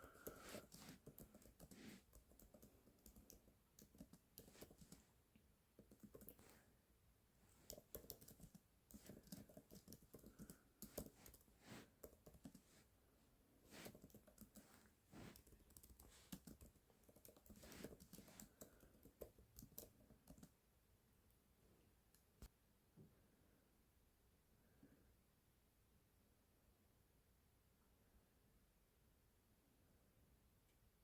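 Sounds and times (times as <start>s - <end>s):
typing on computer keyboard: 0.0s - 5.1s, 5.8s - 6.5s, 7.6s - 12.7s, 13.8s - 14.7s, 15.3s - 20.6s.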